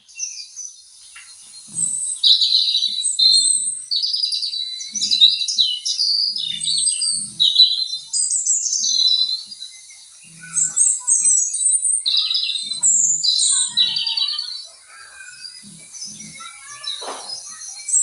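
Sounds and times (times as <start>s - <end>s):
birds chirping and trilling: 0.0s - 18.0s.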